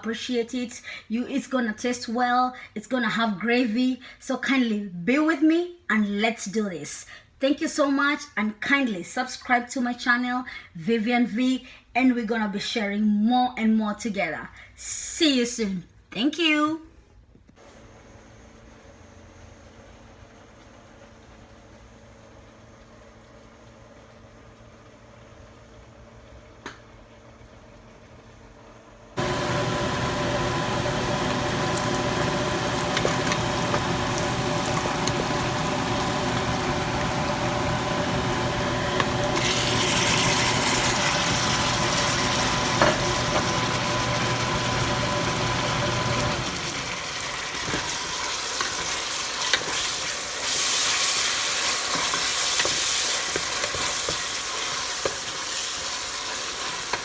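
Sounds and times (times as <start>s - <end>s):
steady hum: 29.2s - 46.8s
food sizzling in a pan: 29.2s - 57.0s
stirring scrapes and clicks: 31.6s - 37.1s, 51.6s - 55.3s.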